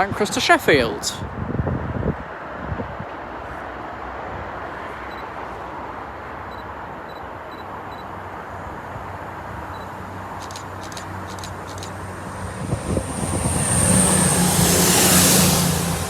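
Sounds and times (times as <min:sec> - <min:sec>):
diesel train rumbling: 0:03.0 - 0:16.0
low engine hum: 0:06.5 - 0:16.0.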